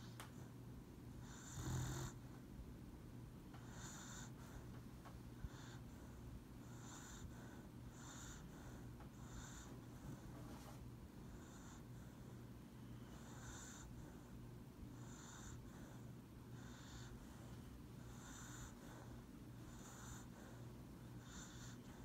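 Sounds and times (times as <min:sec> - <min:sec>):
steady low hum: 0:00.0 - 0:22.0
dog snoring: 0:01.2 - 0:02.2, 0:03.6 - 0:04.6, 0:05.4 - 0:09.7, 0:11.3 - 0:12.3, 0:13.0 - 0:14.3, 0:15.0 - 0:22.0.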